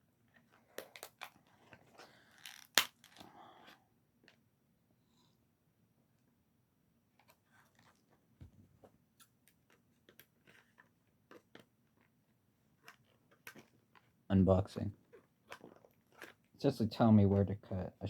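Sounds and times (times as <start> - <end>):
packaging clicks and crinkles: 0.6 - 3.3, 15.1 - 16.5.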